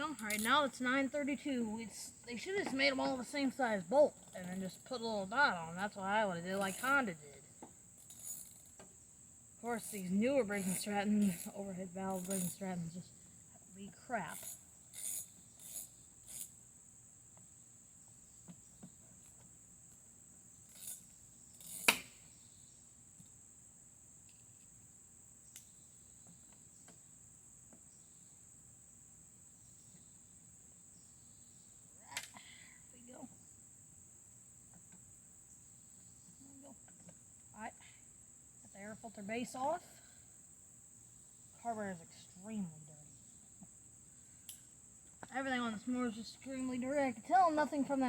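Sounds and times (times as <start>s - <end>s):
insect chirring: 0.0s - 48.0s
metal clicks and clinks: 0.1s - 0.7s.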